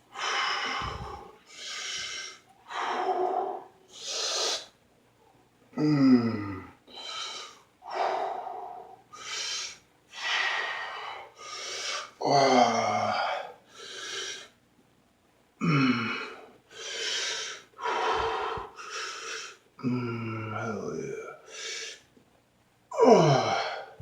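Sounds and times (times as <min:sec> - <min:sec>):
man breathing hard: 0:00.1 - 0:04.7, 0:05.8 - 0:12.2, 0:13.1 - 0:14.6, 0:15.6 - 0:20.3.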